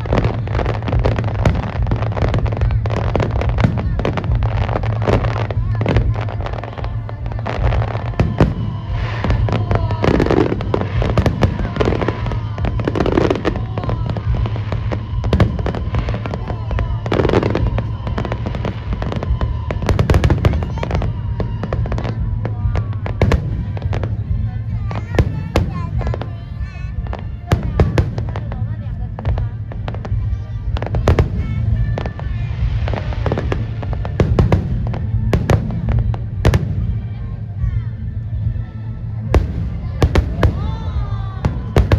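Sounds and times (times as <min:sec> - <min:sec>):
fireworks bangs and crackles: 0:00.0 - 0:41.9
music playing: 0:00.0 - 0:41.9
whistling firework shells: 0:06.0 - 0:24.2.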